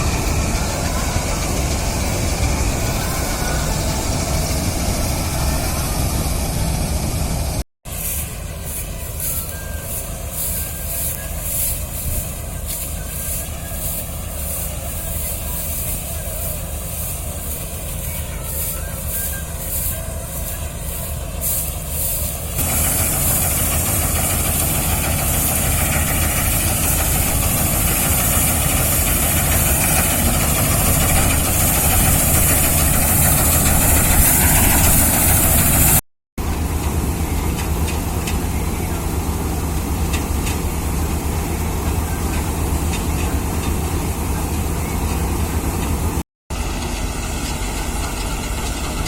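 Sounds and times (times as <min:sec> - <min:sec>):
loud rushing noise: 0:00.0 - 0:37.2
harvester engine humming: 0:00.0 - 0:49.0.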